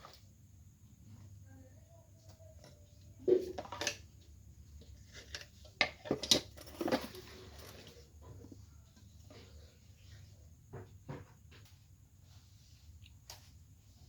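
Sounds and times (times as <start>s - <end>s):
kitchen items knocking and clinking: 5.1s - 7.8s.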